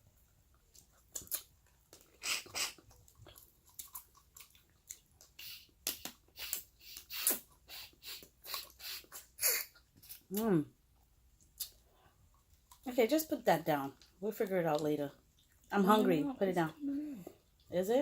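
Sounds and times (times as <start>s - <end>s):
chewing and wet sucking: 0.5s - 10.4s.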